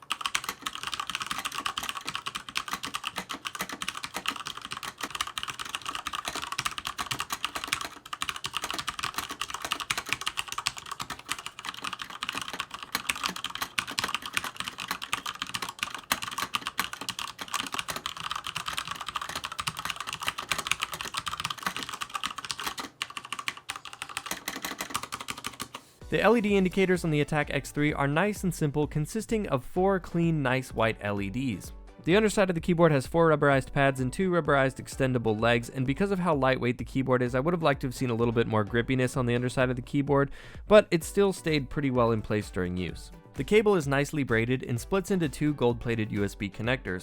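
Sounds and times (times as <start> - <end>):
fast typing on mechanical keyboard: 0.0 - 26.0.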